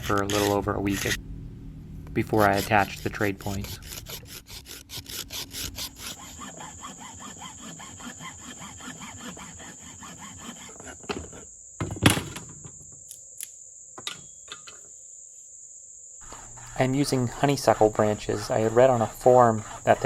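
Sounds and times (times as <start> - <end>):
rapid scraping strokes: 0.0 - 1.2, 2.2 - 11.0, 16.2 - 20.0
crickets chirring: 0.0 - 20.0.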